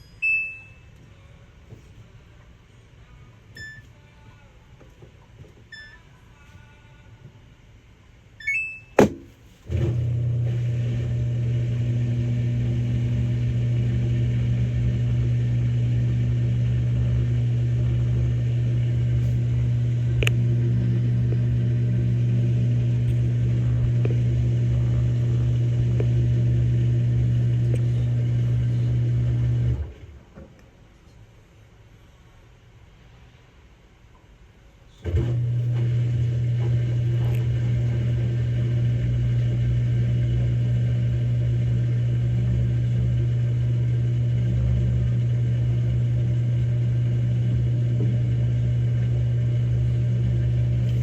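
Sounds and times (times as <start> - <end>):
short electronic beep: 0.0 - 0.9, 3.6 - 3.9, 5.7 - 6.1, 8.4 - 9.0
washing machine humming: 8.4 - 30.4, 35.0 - 51.0
click: 20.2 - 20.4, 27.7 - 27.9.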